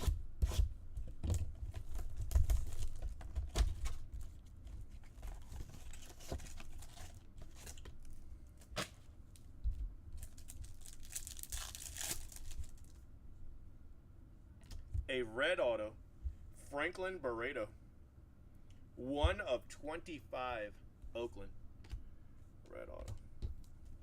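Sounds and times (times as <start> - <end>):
wrapper crinkling and tearing: 10.2 - 13.0.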